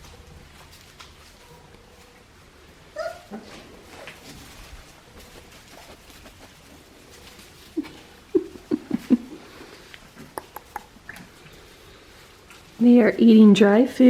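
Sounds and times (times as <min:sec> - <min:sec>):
puppies yipping: 0:02.9 - 0:04.3
high puppy squeaks: 0:03.0 - 0:03.4.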